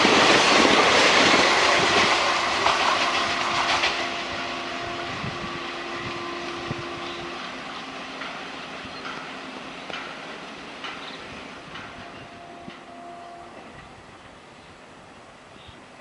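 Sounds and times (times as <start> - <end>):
train wheels clattering: 0.0 - 14.0
faint locomotive horn: 1.8 - 9.1, 11.7 - 14.8.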